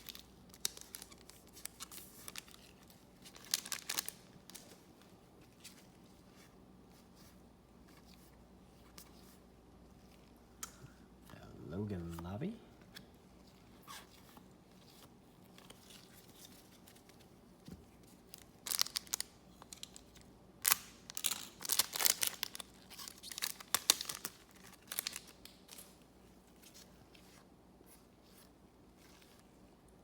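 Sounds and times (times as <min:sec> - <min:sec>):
wrapper tearing and crinkling: 0:00.0 - 0:04.8, 0:18.3 - 0:26.0.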